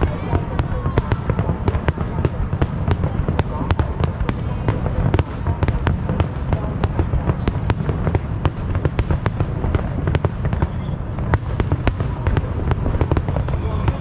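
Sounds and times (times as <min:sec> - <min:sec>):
fireworks cracks and pops: 0:00.0 - 0:14.0.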